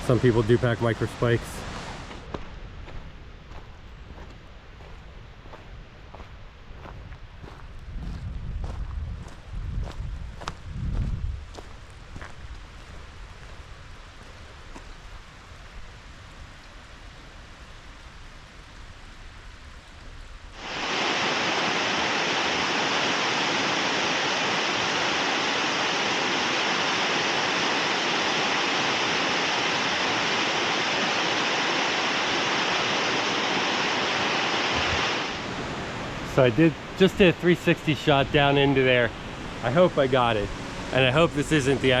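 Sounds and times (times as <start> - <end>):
waterfall rushing: 20.6 - 37.0.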